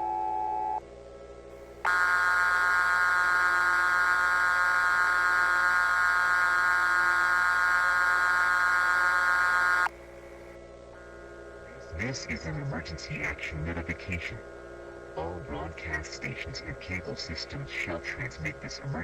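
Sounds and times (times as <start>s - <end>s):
buzzing emergency alarm tone: 1.8s - 9.9s.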